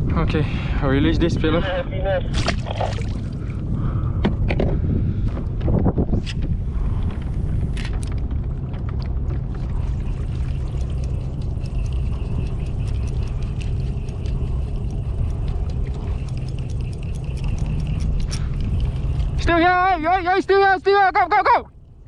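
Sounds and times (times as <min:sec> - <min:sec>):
wind rumble on microphone: 0:00.0 - 0:21.1
water sloshing and trickling: 0:02.3 - 0:03.6, 0:07.1 - 0:20.4.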